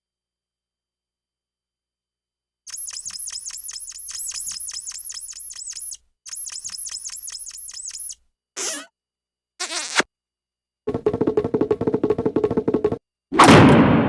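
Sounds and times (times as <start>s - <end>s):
rapid squeaky ticks: 2.7s - 8.2s.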